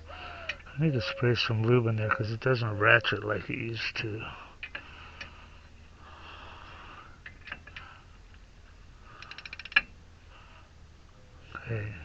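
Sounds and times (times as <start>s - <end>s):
ratchet wrench clicking: 9.2s - 9.9s.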